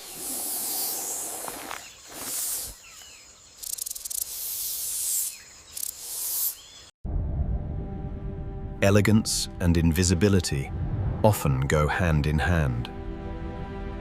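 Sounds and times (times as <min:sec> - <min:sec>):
high hissing bursts: 0:00.0 - 0:01.5, 0:04.1 - 0:06.6.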